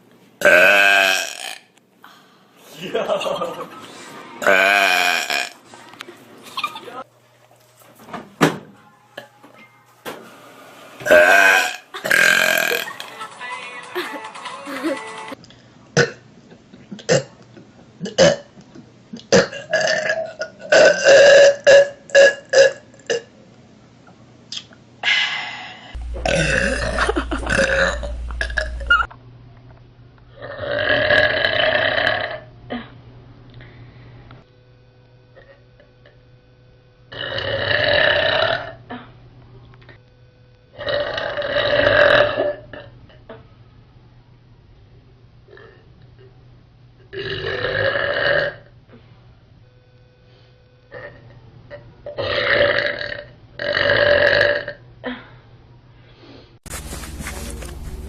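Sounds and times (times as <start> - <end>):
loud belches: 0.4 - 1.6, 4.4 - 5.6, 11.0 - 13.0, 16.0 - 16.2, 17.0 - 17.4, 18.0 - 18.5, 19.2 - 23.2, 26.0 - 29.1, 30.4 - 32.5, 37.1 - 38.8, 40.8 - 42.9, 47.1 - 48.7, 52.1 - 54.8
loud deep burp: 0.4 - 1.7, 4.4 - 5.6, 11.0 - 13.0, 16.0 - 16.2, 17.0 - 17.4, 18.0 - 18.5, 19.2 - 23.2, 26.0 - 29.1, 30.4 - 32.5, 37.1 - 38.8, 40.8 - 43.0, 47.1 - 48.7, 52.1 - 54.8.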